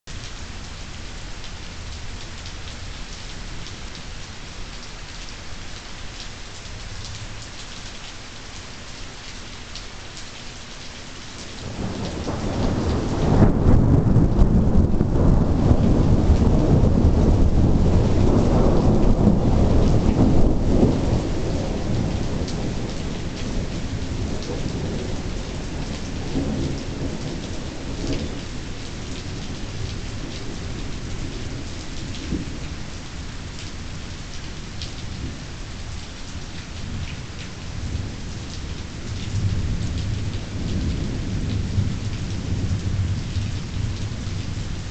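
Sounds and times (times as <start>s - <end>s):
steady rain falling: 0.1s - 44.9s
thunder rumbling: 11.6s - 32.8s.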